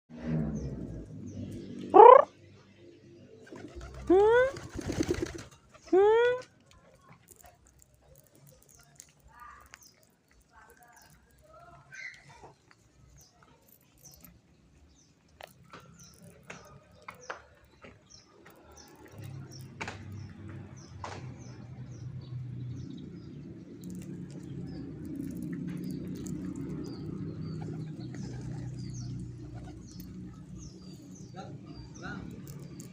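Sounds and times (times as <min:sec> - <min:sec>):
pigeons cooing: 0:01.9 - 0:02.3, 0:25.2 - 0:30.8
wings flapping: 0:03.4 - 0:06.0.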